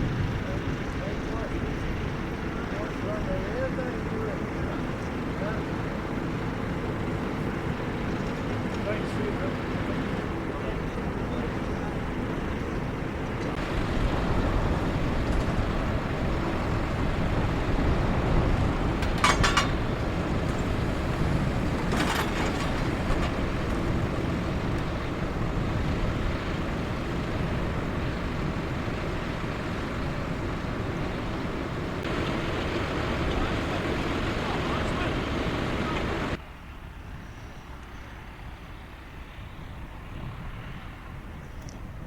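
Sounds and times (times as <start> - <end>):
tractor engine pulling plough: 0.0 - 36.4.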